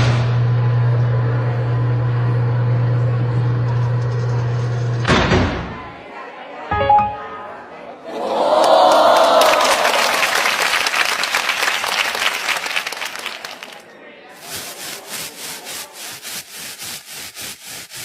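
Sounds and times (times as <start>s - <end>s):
rubbing strokes: 14.4s - 18.0s.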